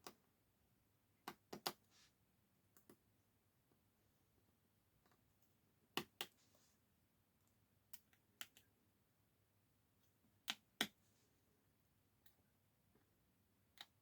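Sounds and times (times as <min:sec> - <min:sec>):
small clicks of tablet parts: 0:07.9 - 0:08.7.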